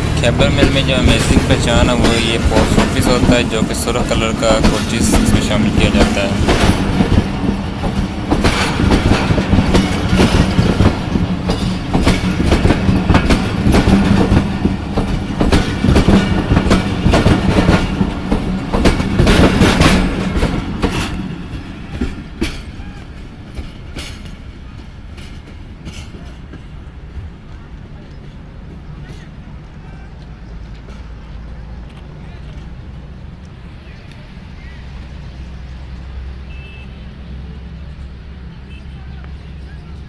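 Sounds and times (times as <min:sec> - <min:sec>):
train wheels clattering over rail joints: 0:00.0 - 0:29.6.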